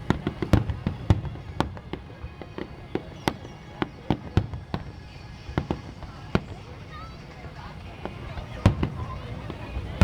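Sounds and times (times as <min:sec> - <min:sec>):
fireworks bangs with rumbling echoes: 0:00.0 - 0:10.0.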